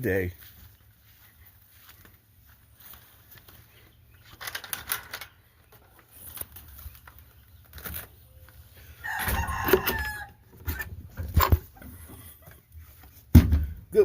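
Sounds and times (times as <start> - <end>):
rooster crowing: 8.8 - 10.5.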